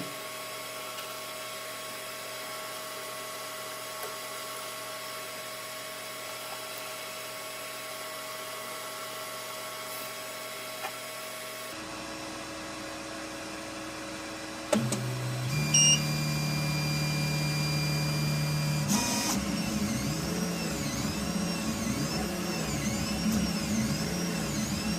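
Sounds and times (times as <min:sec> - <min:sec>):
stepper motors whining: 0:14.8 - 0:24.9.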